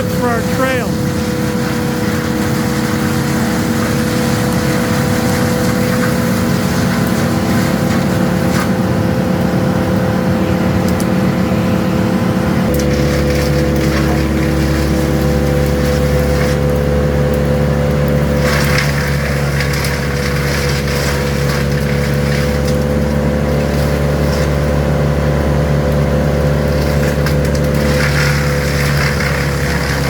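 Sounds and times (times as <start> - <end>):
wood chipper running: 0.0 - 10.1, 12.4 - 30.0.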